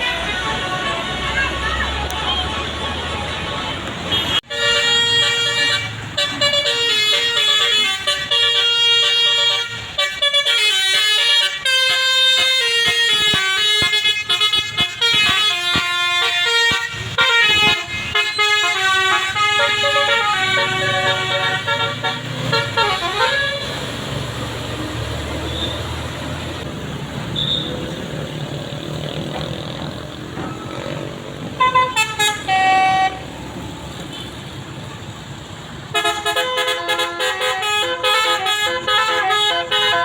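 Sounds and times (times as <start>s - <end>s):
musical air horn tune: 4.1s - 23.8s.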